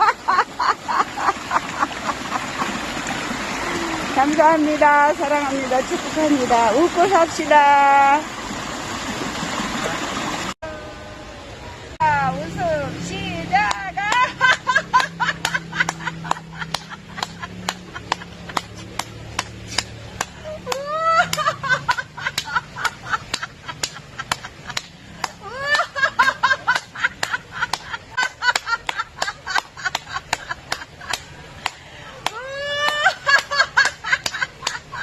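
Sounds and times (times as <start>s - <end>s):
woman laughing: 0.0s - 2.7s, 14.0s - 18.8s, 20.4s - 31.2s, 32.2s - 35.0s
hands clapping: 13.6s - 25.8s, 26.7s - 34.8s.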